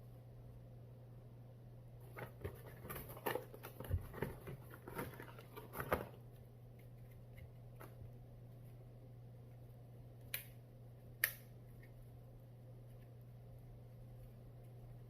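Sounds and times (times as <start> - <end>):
steady low hum: 0.0 - 15.0
unboxing clicks and rustles: 2.0 - 8.0.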